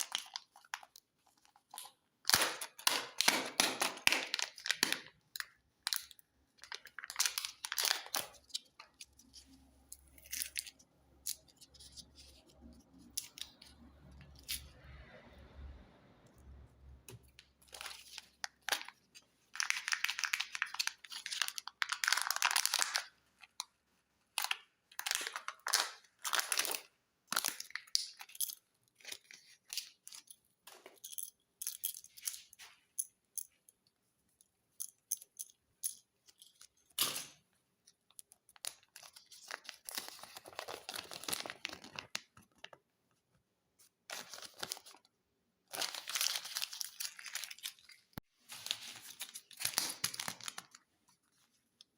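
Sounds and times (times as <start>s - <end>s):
wrappers tearing and crinkling: 17.6s - 23.1s, 24.4s - 28.4s, 38.6s - 42.3s, 44.1s - 45.0s, 45.7s - 50.8s.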